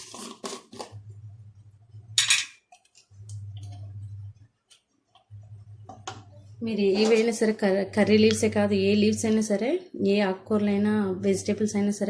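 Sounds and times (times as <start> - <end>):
clinks of metal vessels and cup: 2.2 - 2.6.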